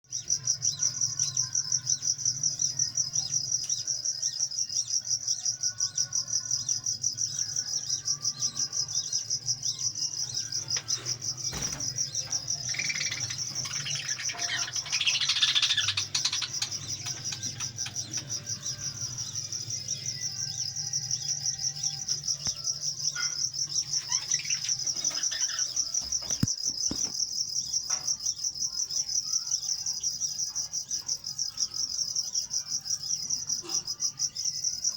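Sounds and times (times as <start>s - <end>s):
insect trilling: 0.1s - 34.9s
parrots chirping and chattering: 6.7s - 31.8s.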